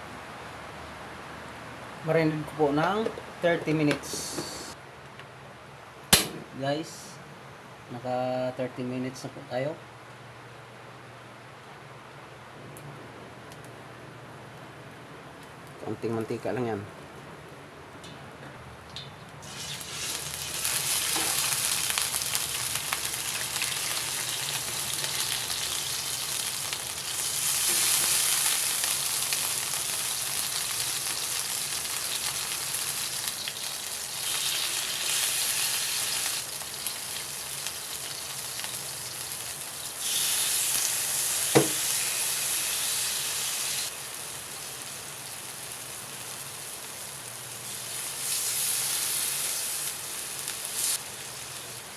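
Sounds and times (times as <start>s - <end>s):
sharp click: 6.1s - 6.5s
pork sizzling in a pan: 19.4s - 51.9s.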